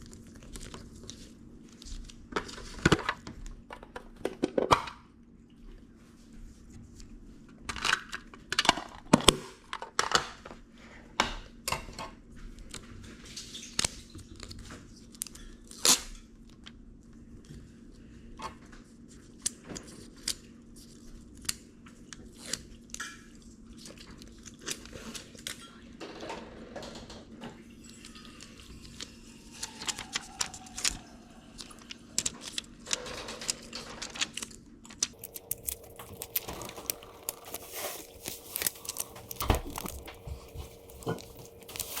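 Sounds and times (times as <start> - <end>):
paper crinkling and tearing: 34.1 - 42.0
faint steady hum: 34.7 - 42.0.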